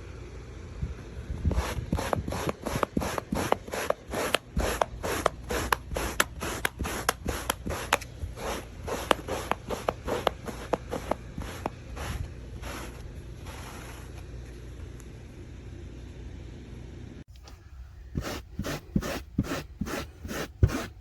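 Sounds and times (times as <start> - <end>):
brush scraping upholstery: 1.5 - 14.2, 18.2 - 21.0.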